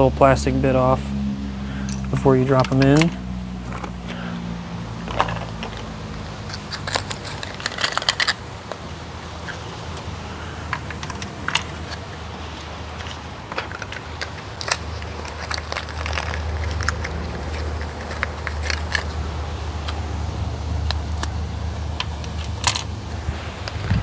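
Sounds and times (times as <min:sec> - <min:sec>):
low steady hum: 0:00.0 - 0:24.0
metallic clicks of spark plugs: 0:01.6 - 0:04.3.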